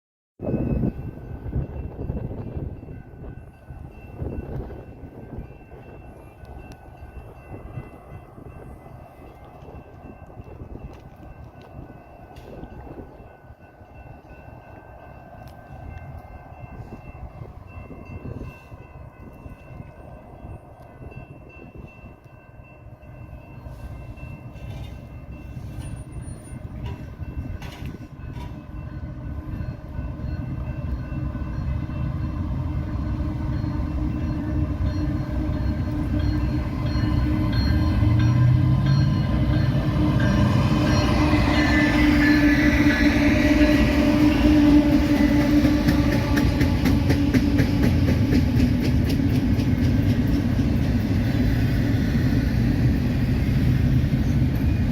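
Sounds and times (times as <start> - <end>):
diesel locomotive engines running: 0.4 - 54.9
rail car wheel clicks: 24.5 - 28.8, 44.5 - 51.7.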